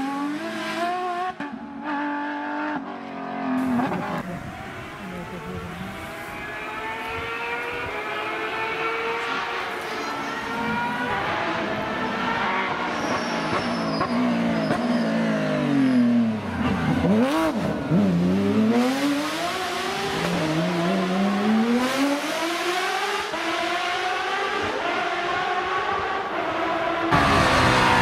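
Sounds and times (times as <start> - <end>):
rally car engine revving: 0.0 - 28.0.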